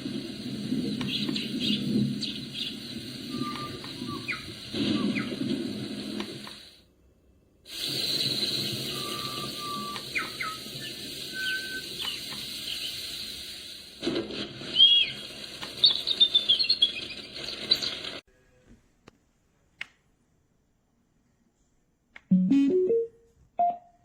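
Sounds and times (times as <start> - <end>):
steady hiss: 0.0 - 7.0, 7.6 - 16.2
birds chirping and whistling: 1.0 - 5.4, 8.9 - 13.0, 15.8 - 18.1.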